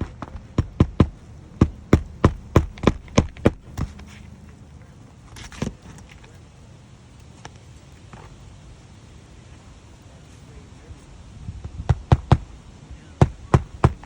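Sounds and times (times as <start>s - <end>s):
hammer striking roof: 0.0s - 4.2s, 11.9s - 12.5s, 13.2s - 14.0s.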